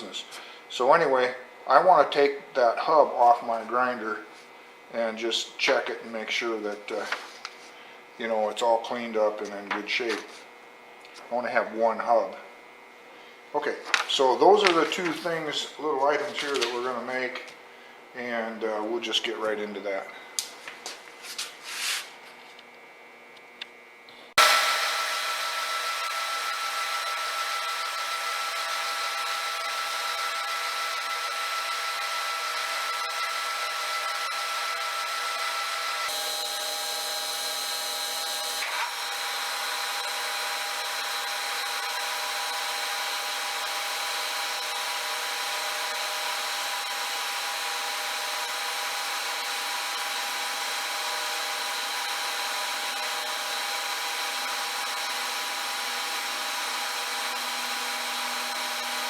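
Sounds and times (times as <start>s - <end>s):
power tool cutting steel: 24.4s - 59.0s.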